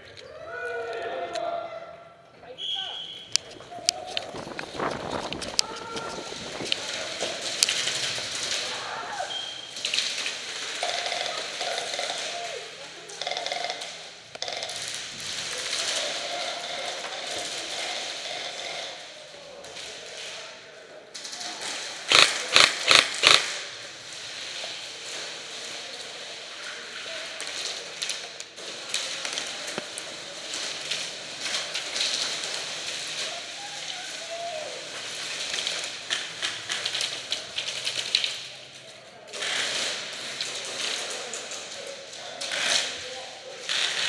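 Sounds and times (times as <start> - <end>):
airsoft guns firing: 10.6 - 12.5, 22.1 - 23.8.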